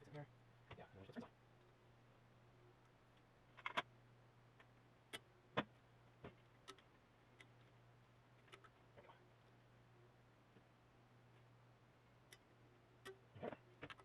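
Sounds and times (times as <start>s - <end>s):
faint low hum: 0.0s - 14.0s
faint clicks and taps: 4.5s - 9.6s.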